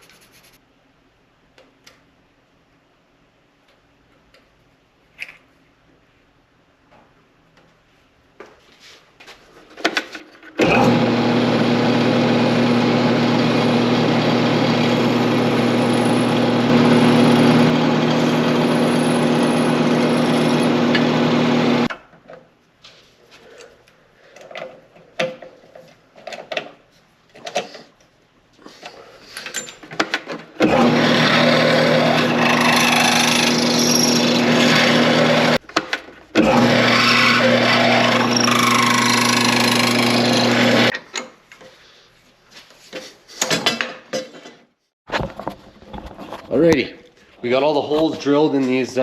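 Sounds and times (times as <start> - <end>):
electric drill boring metal: 10.6 - 21.9, 30.6 - 35.6, 36.4 - 40.9
knocks and handling clatter: 42.9 - 46.6.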